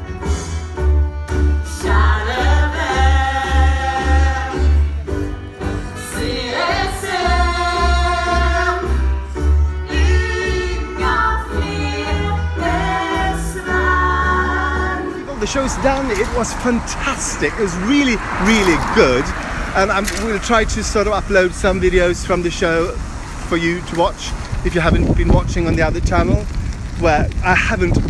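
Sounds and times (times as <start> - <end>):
steady bass beat: 0.0 - 15.0
song with held sung notes: 0.0 - 15.5.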